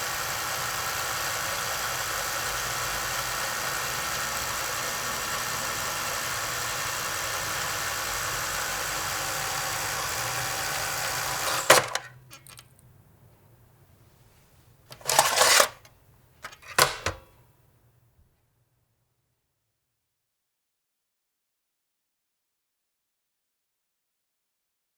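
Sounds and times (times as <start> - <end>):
rewinder stopping with sharp click: 0.0 - 12.6, 14.9 - 17.4
tape rewinder whirring: 0.0 - 12.6, 14.9 - 17.3
cassette pulled out: 9.1 - 12.7, 14.9 - 17.3
rewinder shut with clicks: 11.3 - 12.6, 14.9 - 17.3.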